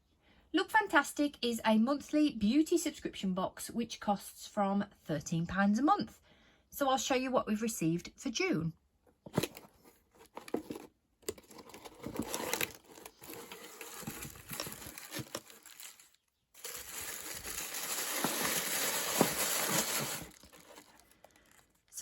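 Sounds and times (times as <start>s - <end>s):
paper packaging crinkling: 9.4s - 22.0s.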